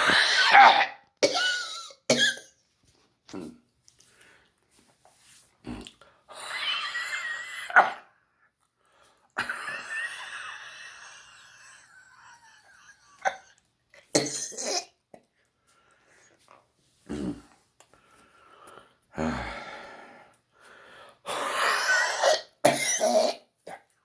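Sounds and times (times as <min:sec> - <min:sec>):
man coughing: 0:00.6 - 0:02.5, 0:22.2 - 0:23.4.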